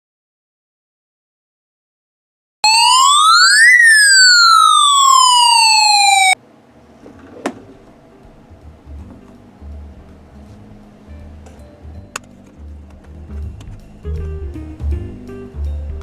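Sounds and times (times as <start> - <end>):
rising and falling electronic siren tone: 2.6 - 6.4.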